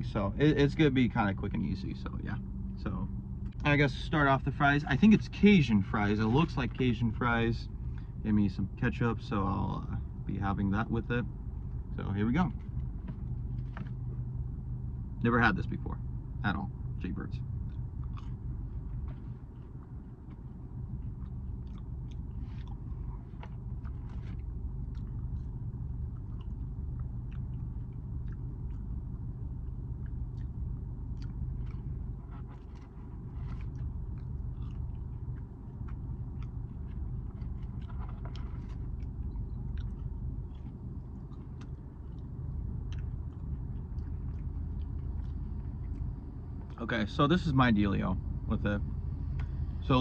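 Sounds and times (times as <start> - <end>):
steady low hum: 0.0 - 50.0
person chewing fries: 17.6 - 46.8.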